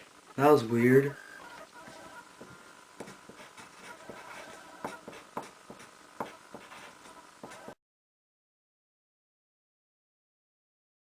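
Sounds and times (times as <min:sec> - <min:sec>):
faint steady hum: 0:00.0 - 0:07.8
pencil writing on paper: 0:01.9 - 0:07.8.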